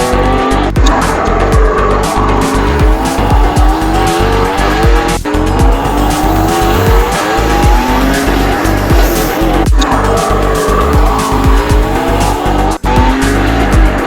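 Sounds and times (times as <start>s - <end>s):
electronic beat music: 0.0s - 14.0s
race car engine revving: 0.0s - 14.0s
kick drum: 2.8s - 4.1s, 9.7s - 9.9s, 13.0s - 14.0s.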